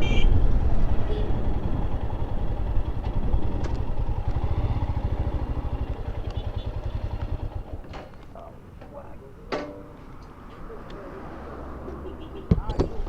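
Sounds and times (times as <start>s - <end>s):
motorcycle engine running: 0.1s - 8.2s.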